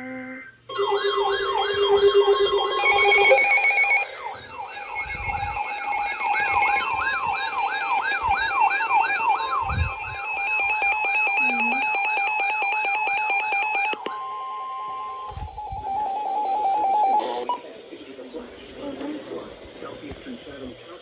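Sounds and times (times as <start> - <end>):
steady attention tones: 0.0 - 20.9
rapid sweeping alert tone: 0.7 - 11.7
warbling and pulsing beeps: 0.7 - 14.0.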